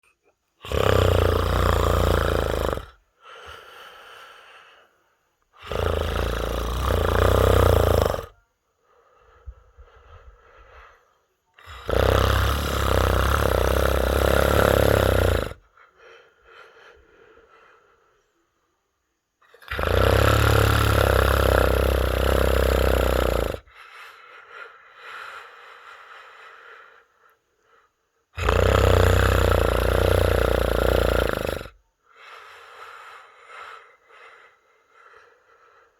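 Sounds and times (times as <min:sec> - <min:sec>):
soft breaths: 0:00.0 - 0:35.9
person snoring loudly: 0:00.6 - 0:03.7, 0:05.6 - 0:08.4, 0:11.6 - 0:15.7, 0:19.5 - 0:23.8, 0:28.3 - 0:31.8.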